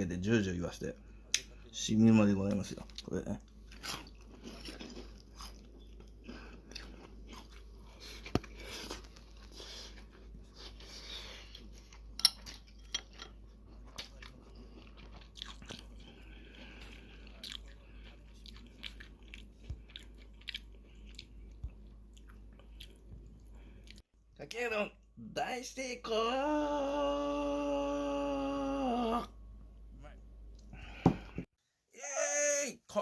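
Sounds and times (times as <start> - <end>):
chewing and crunching: 2.4 - 24.0.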